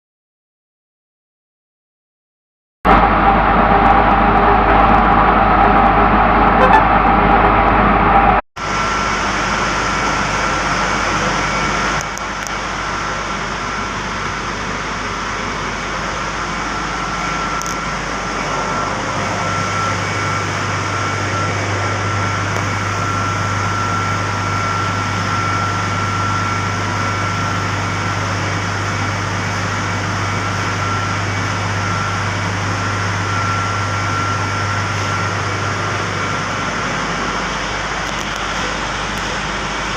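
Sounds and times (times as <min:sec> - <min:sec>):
thin steady whine: 0:02.9 - 0:39.9.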